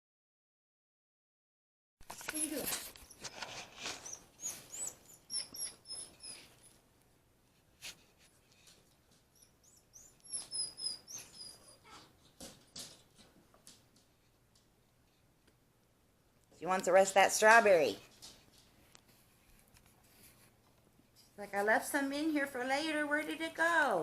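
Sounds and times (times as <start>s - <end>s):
monkey chirping: 4.0s - 6.5s, 9.4s - 12.0s.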